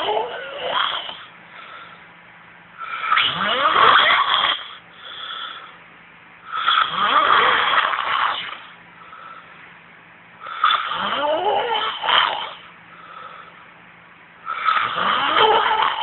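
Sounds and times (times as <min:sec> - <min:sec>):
man snoring heavily: 0:00.0 - 0:01.3, 0:02.8 - 0:04.8, 0:06.5 - 0:08.7, 0:10.6 - 0:12.6, 0:14.5 - 0:16.0
quiet breath: 0:01.4 - 0:02.2, 0:04.8 - 0:06.6, 0:08.9 - 0:09.8, 0:12.8 - 0:13.8.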